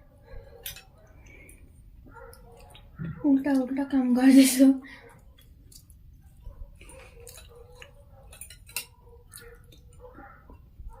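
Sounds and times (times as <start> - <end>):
soft chewing: 0.0 - 3.8, 4.8 - 11.0
utensils clicking and tapping: 6.8 - 10.3.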